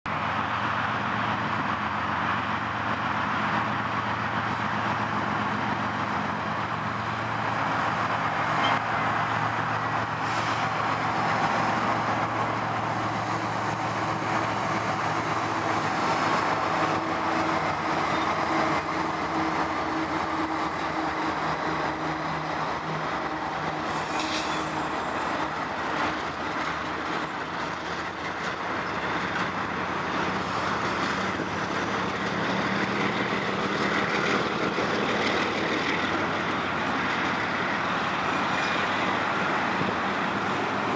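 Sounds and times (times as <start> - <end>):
train wheels rumbling on rails: 0.1 - 40.9
high wheel squeal: 23.8 - 32.6.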